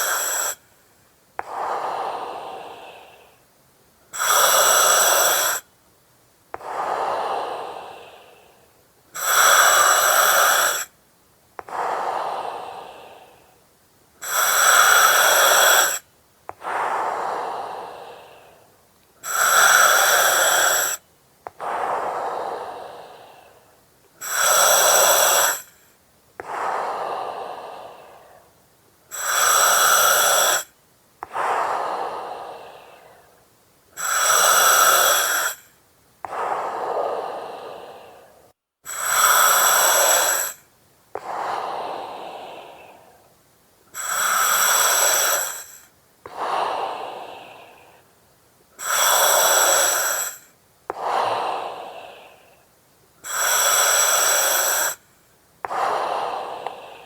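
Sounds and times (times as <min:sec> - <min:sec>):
oxygen mask regulator hiss: 0:00.0 - 0:00.7, 0:04.1 - 0:05.7, 0:09.2 - 0:11.0, 0:14.2 - 0:16.0, 0:19.2 - 0:23.6, 0:24.2 - 0:28.5, 0:29.1 - 0:33.2, 0:34.0 - 0:43.3, 0:43.9 - 0:48.1, 0:48.8 - 0:52.6, 0:53.2 - 0:57.0
soft breathing: 0:00.0 - 0:05.8, 0:06.5 - 0:11.0, 0:11.6 - 0:57.0.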